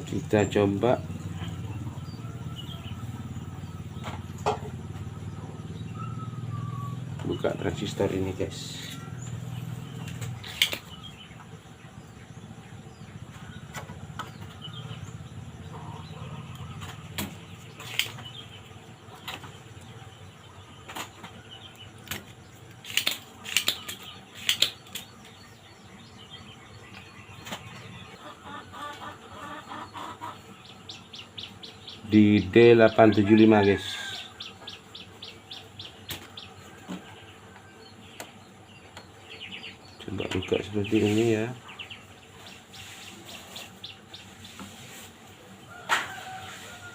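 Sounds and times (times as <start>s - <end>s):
hand tools clicking on circuit board: 22.8s - 25.1s.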